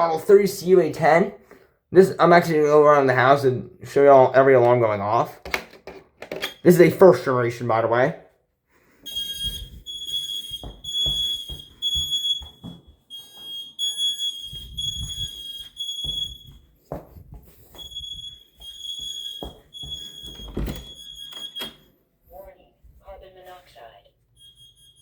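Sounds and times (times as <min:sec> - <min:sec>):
smoke alarms beeping: 0:08.9 - 0:22.0, 0:24.2 - 0:25.0.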